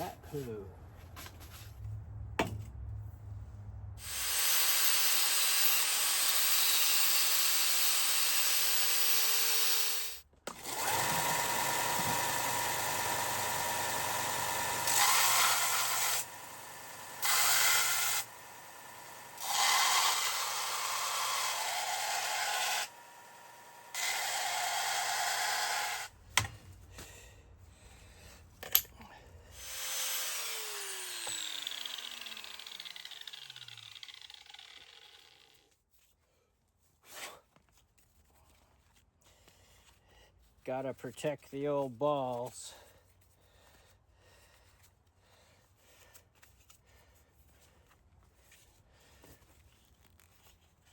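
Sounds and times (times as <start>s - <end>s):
electric grinder grinding steel: 4.0s - 26.1s, 29.6s - 35.5s.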